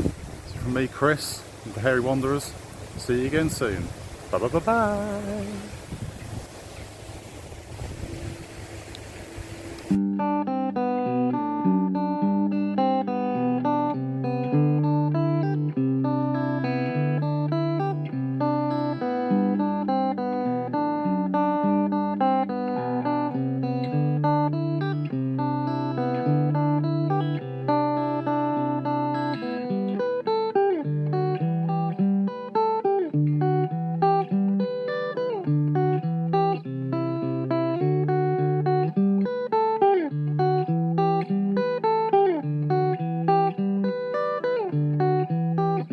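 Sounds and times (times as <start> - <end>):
plucked guitar: 0.0 - 6.3, 9.8 - 45.9
sliding guitar notes: 9.8 - 45.9.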